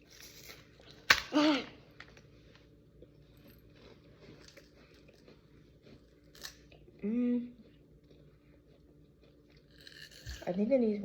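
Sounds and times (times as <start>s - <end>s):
cracker snapping: 0.4s - 1.4s
chewing crunches: 3.0s - 7.0s, 7.6s - 10.5s.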